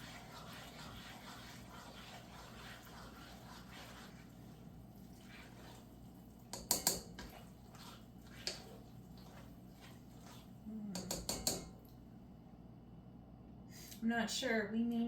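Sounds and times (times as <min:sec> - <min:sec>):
pasta stirred in sauce: 0:00.0 - 0:11.8.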